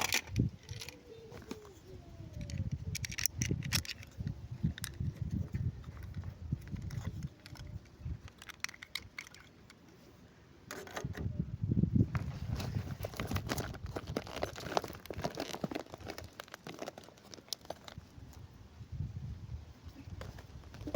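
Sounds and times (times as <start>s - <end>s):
plastic toy pieces clicking: 0.0s - 1.0s, 2.3s - 5.2s, 5.8s - 9.8s.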